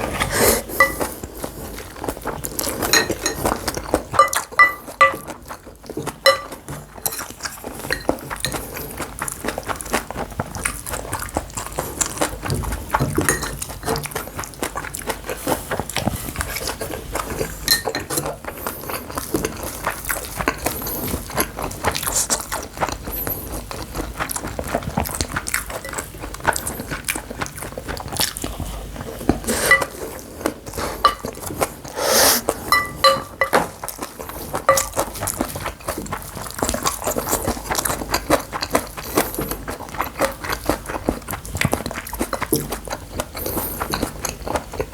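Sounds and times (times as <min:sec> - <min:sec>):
chewing food: 0:00.0 - 0:44.9
spoon clinking against bowl: 0:00.8 - 0:01.1, 0:02.9 - 0:03.6, 0:04.2 - 0:05.3, 0:06.2 - 0:07.3, 0:13.2 - 0:13.6, 0:17.6 - 0:18.2, 0:29.6 - 0:30.0, 0:31.0 - 0:31.3, 0:32.7 - 0:33.7, 0:34.7 - 0:35.0.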